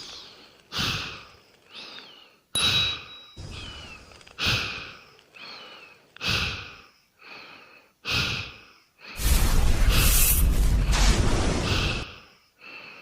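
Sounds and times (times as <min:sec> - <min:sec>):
person breathing heavily: 0:00.0 - 0:09.3, 0:11.6 - 0:13.0
soft whistling breath: 0:01.6 - 0:04.1, 0:05.4 - 0:06.0.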